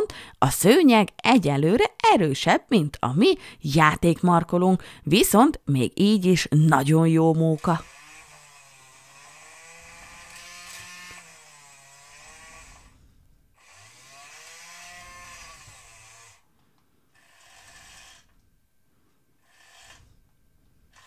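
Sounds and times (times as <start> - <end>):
small electric motor whining: 7.5 - 16.5, 17.1 - 18.4, 19.4 - 20.2.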